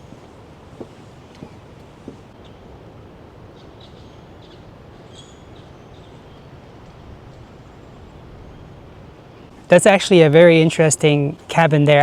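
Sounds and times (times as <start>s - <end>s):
small birds chirping: 3.5s - 9.7s.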